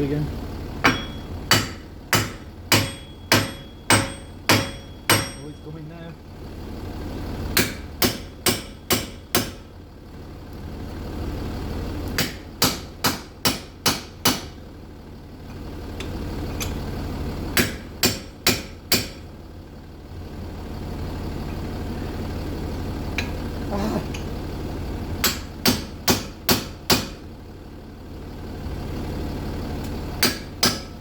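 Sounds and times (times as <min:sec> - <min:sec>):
steady low hum: 0:00.0 - 0:31.0
hammer striking wheel hub: 0:00.8 - 0:05.7, 0:07.6 - 0:09.7, 0:12.1 - 0:14.6, 0:17.6 - 0:19.2, 0:25.2 - 0:27.2, 0:30.2 - 0:31.0.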